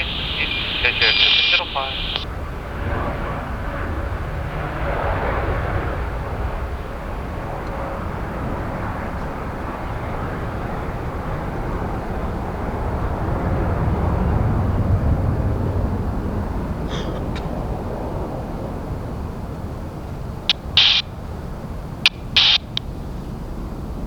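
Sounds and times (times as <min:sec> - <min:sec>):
jet engine roar: 0:00.0 - 0:24.0.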